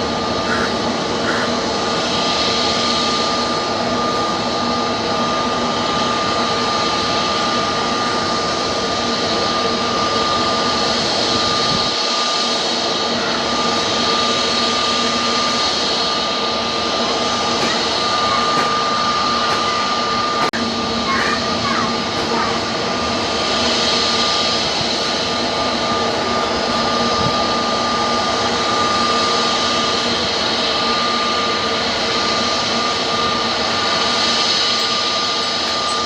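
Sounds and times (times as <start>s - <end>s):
jet engine whine: 0.0s - 36.0s
jet engines roaring: 0.0s - 36.0s.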